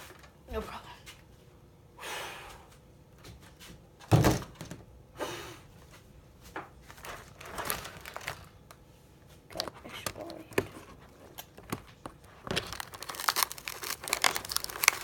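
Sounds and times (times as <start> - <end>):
packaging rustles and scrapes: 6.8 - 8.7, 9.5 - 15.0.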